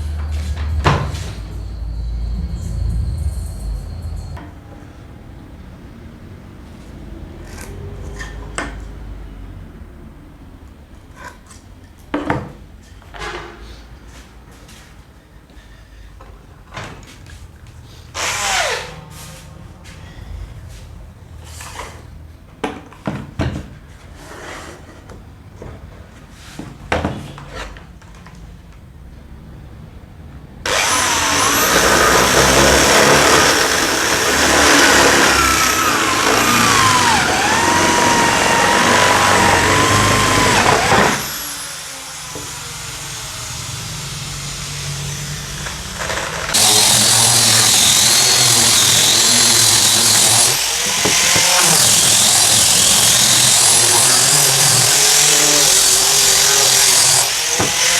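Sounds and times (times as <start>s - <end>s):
power tool cutting wood whine: 18.2s - 19.0s, 30.7s - 57.9s.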